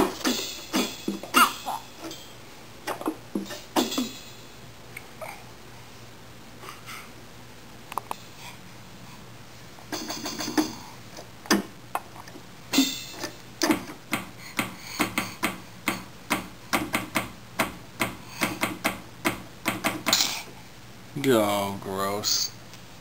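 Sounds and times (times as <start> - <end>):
baby hitting keyboard keys: 13.6 - 20.2.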